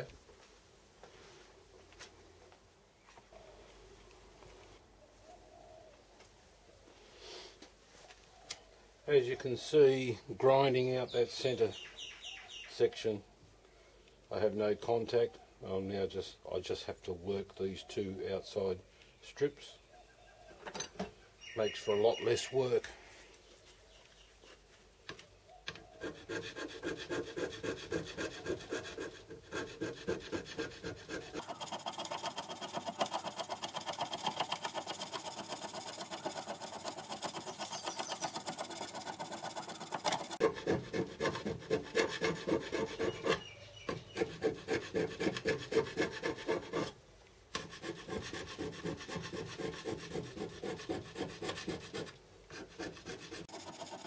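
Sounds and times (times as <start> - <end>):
hand tool scraping metal: 26.0 - 54.0.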